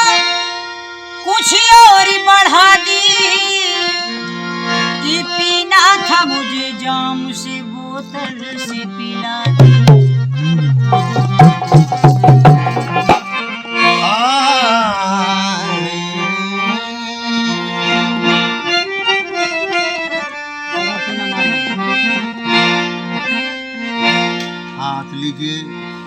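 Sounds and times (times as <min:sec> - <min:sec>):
harmonium melody: 0:00.0 - 0:26.0
hand drum strokes: 0:09.5 - 0:13.3.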